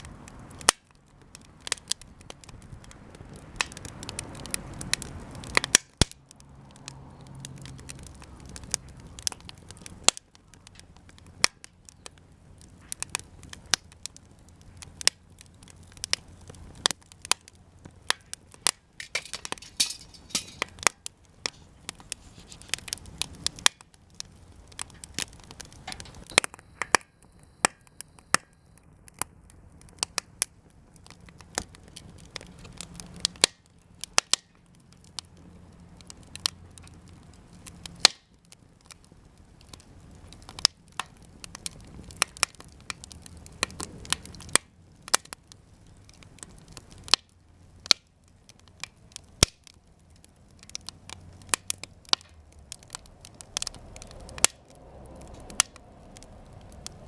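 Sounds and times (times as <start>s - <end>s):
wood crackling in a campfire: 0.0s - 57.0s
hiss of flame: 19.1s - 23.8s.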